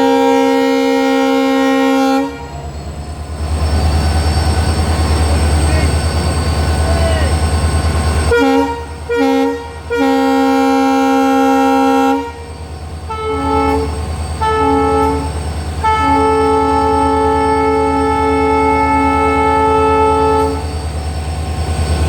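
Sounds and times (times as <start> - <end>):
locomotive horn blasts: 0.0 - 2.7, 8.3 - 20.7.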